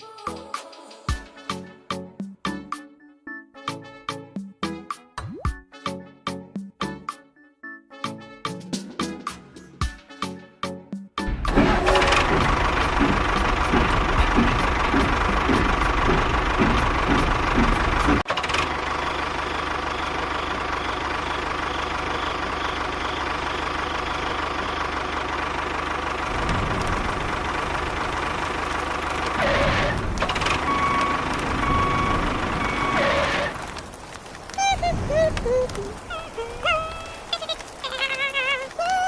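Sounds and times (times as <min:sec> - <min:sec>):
engine knocking: 0:11.3 - 0:33.7
small engine running: 0:11.4 - 0:33.8.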